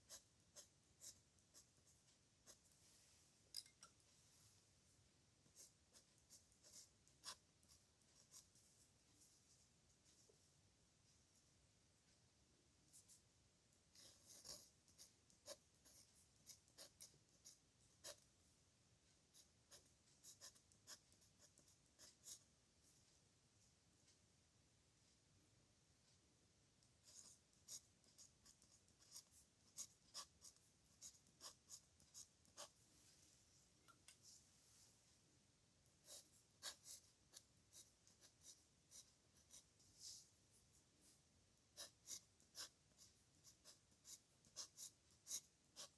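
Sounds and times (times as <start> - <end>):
pen nib scratching on paper: 0.0 - 2.8, 5.5 - 8.8, 13.9 - 18.3, 19.3 - 22.5, 26.8 - 32.8, 36.0 - 45.9.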